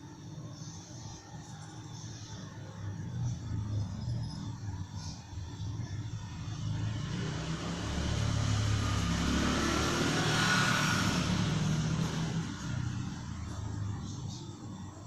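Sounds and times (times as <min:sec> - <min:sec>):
vehicle engine passing by: 0:03.0 - 0:14.4.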